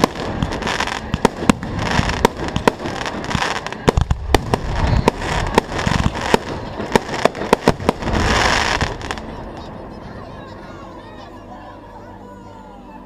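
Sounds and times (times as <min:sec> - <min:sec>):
fireworks bursting: 0:00.0 - 0:09.6.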